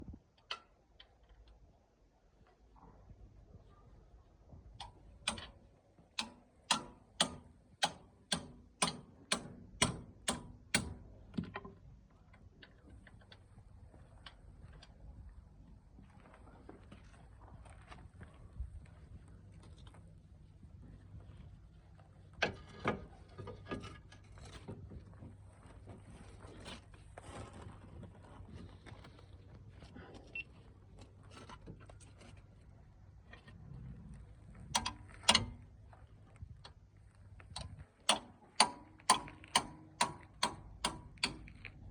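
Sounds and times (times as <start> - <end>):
sharp clicks: 37.4 - 41.8.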